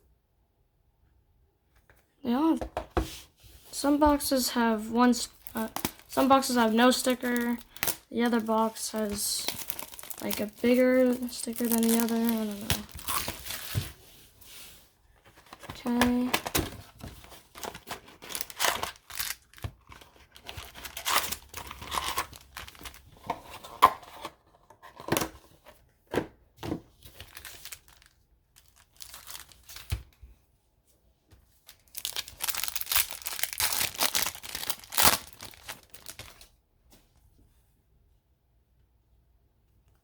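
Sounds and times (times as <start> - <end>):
plastic wrapper crinkling and tearing: 3.7 - 14.0, 15.4 - 23.6, 27.0 - 30.2, 31.6 - 36.5.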